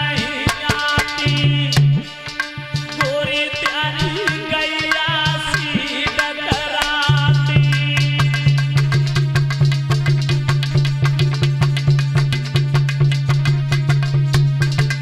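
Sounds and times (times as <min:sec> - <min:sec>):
hand drums beating: 0:00.5 - 0:15.0
bending melody line: 0:03.8 - 0:08.1.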